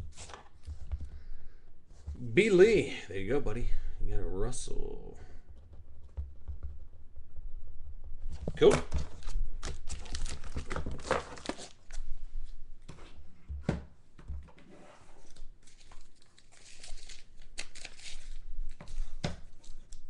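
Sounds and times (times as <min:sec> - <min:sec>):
plastic packaging rustling: 0:08.3 - 0:12.2, 0:15.2 - 0:20.0.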